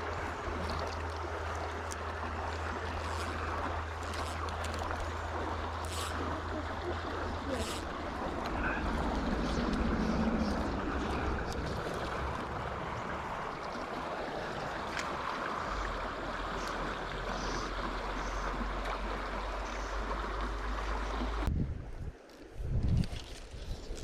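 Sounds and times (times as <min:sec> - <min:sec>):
low rumble: 0:00.0 - 0:14.9
stream water rushing: 0:00.0 - 0:21.5.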